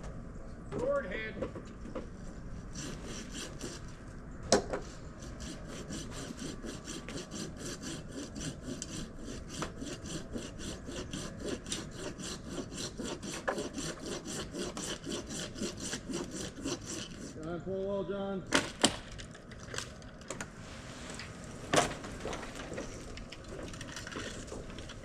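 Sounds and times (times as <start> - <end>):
hand saw cutting wood: 2.7 - 3.9, 5.2 - 17.5.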